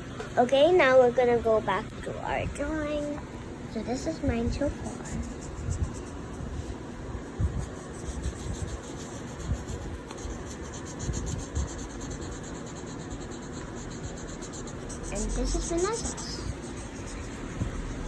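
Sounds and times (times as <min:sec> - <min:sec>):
scratchy colouring on paper: 0:03.9 - 0:18.0.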